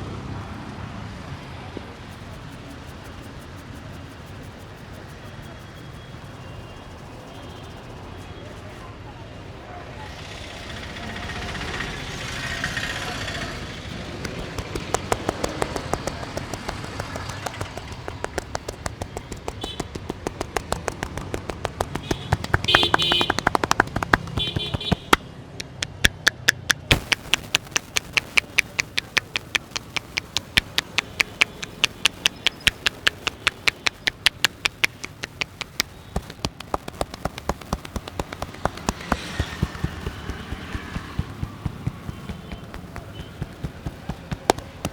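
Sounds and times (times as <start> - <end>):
low street background: 0.0 - 44.9
hands tapping on head: 13.4 - 44.9.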